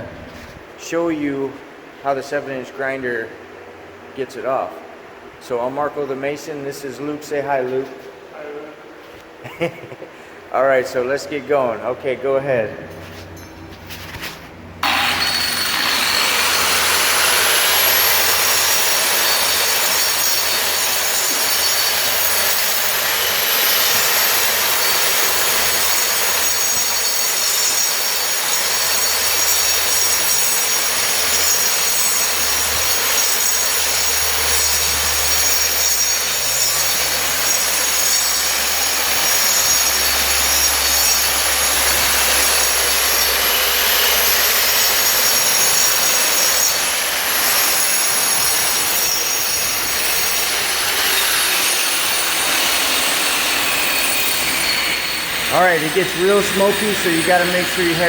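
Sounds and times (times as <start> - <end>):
angle grinder grinding mortar: 14.8 - 58.0.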